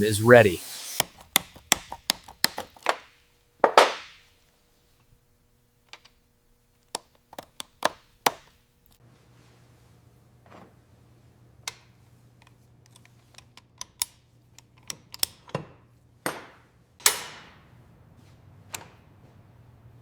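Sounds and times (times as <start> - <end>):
tools clicking and knocking: 1.0 - 3.8.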